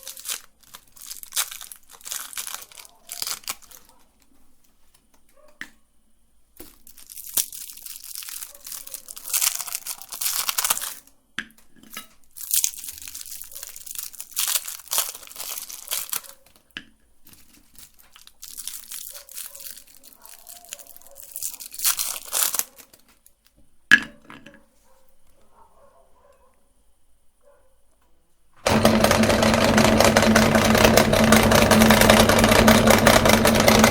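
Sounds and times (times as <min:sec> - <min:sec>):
plastic wrappers crinkling: 0:00.0 - 0:05.5, 0:06.6 - 0:23.6.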